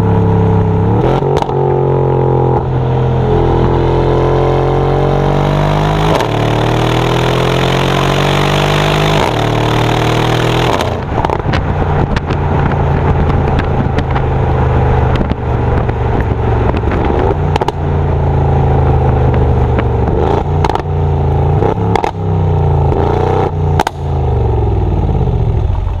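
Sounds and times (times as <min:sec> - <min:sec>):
car exhaust pulling hard: 0:00.0 - 0:26.0
exhaust crackles and pops: 0:00.6 - 0:01.6, 0:10.4 - 0:18.1, 0:18.8 - 0:22.2, 0:22.8 - 0:26.0.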